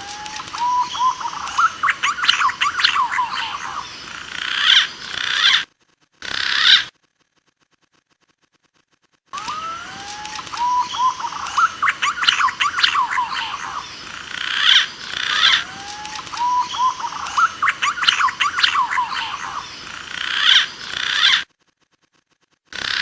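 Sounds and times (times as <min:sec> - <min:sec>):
pigeon whistling call: 0:10.6 - 0:13.7, 0:16.3 - 0:19.4.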